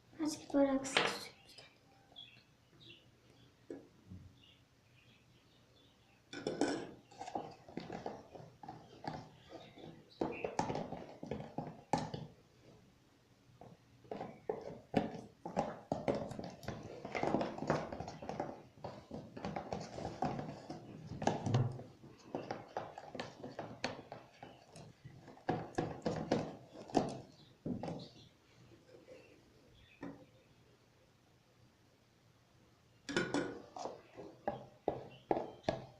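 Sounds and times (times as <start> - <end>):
spoon stirring slime: 6.4 - 12.8, 14.1 - 28.2.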